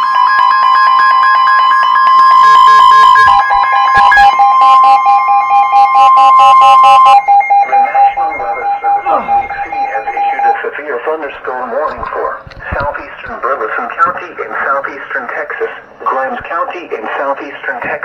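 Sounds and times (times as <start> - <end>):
pulsing electronic alarm tones: 0.0 - 13.4
steady tone: 2.3 - 14.1
broadcast voice: 7.4 - 18.0.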